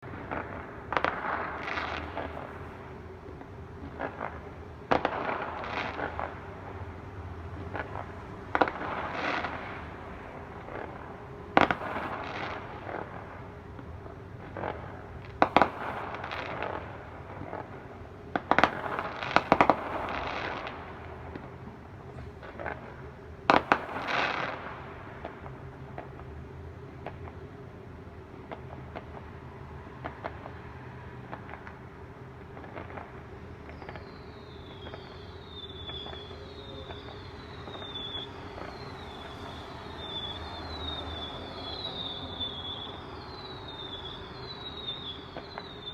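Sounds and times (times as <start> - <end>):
fireworks crackling: 0.0 - 45.9
firework shells bursting: 11.6 - 13.1, 14.6 - 16.8, 18.4 - 20.9.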